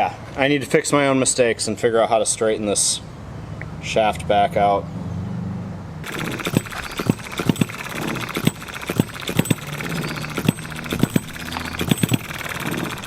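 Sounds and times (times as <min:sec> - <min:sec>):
cicadas buzzing: 0:06.0 - 0:13.0
model engine knocks and clicks: 0:06.0 - 0:13.0.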